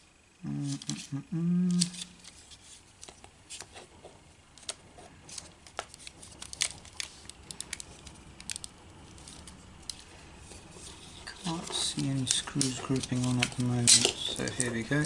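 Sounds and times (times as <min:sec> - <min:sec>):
plastic controller parts clicking: 0:04.5 - 0:10.0, 0:11.5 - 0:15.0.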